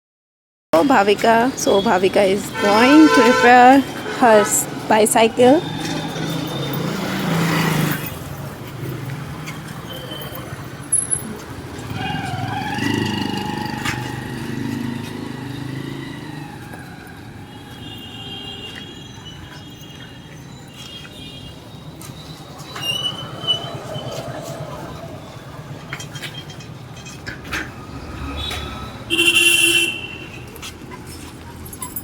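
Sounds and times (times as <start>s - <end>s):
road traffic passing: 0.8s - 32.0s.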